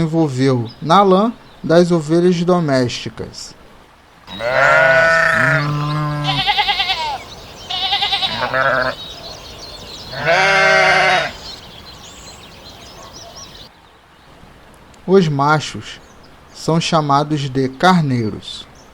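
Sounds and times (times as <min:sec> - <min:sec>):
sheep bleating: 0:04.3 - 0:11.6.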